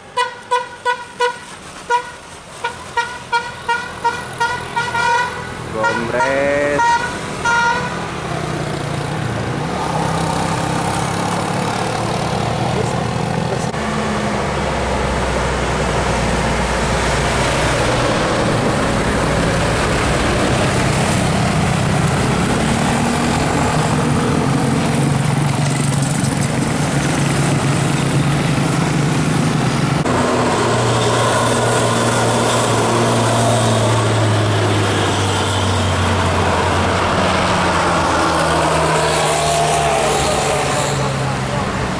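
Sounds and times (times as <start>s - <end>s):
bus and traffic engines climbing: 0.0s - 41.9s
musical bus horn: 0.1s - 8.1s.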